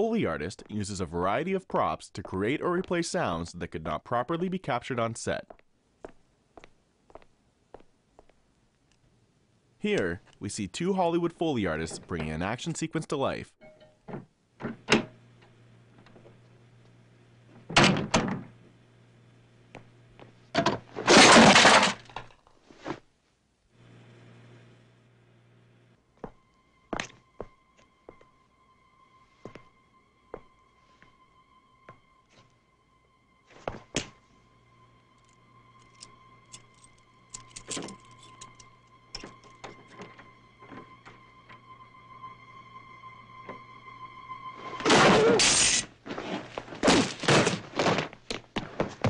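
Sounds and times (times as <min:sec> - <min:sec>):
faint musical drone: 0:23.9 - 0:46.8.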